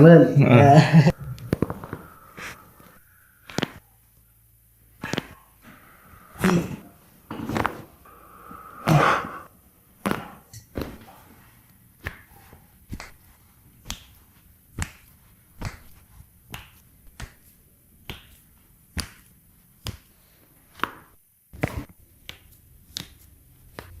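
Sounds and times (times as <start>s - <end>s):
sharp snaps: 1.1s - 3.9s, 5.0s - 6.9s, 12.9s - 13.2s, 13.8s - 24.0s.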